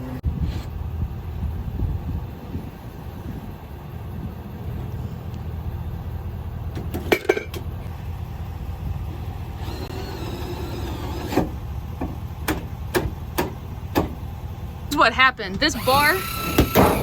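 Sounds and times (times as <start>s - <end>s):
vehicle engine rumbling: 0.0s - 17.0s
mechanical whine: 9.6s - 11.6s, 15.8s - 17.0s.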